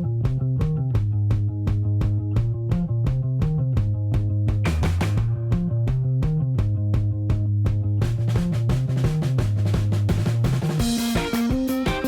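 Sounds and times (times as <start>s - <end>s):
held bass line: 0.0s - 12.0s
steady drum beat: 0.0s - 12.0s.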